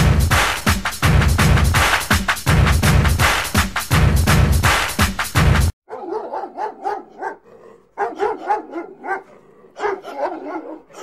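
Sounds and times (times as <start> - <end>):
music: 0.0 - 5.8
dog barking: 5.9 - 11.0.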